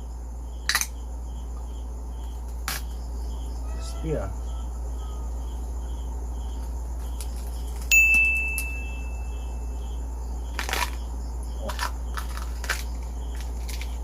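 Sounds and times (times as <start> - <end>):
crickets chirping: 0.0 - 14.0
low hum: 4.4 - 14.0
bright ding: 7.9 - 9.6
crunch of food being bitten: 10.5 - 14.0.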